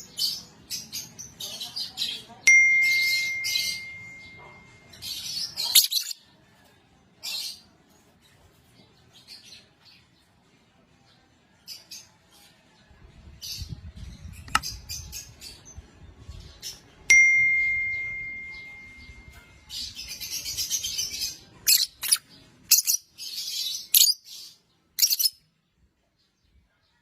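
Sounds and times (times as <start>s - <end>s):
bell-like ding: 2.5s - 5.2s, 17.1s - 19.6s
parrots chirping: 2.8s - 6.2s, 20.5s - 25.4s
parrots chattering: 5.4s - 6.2s, 21.6s - 24.2s.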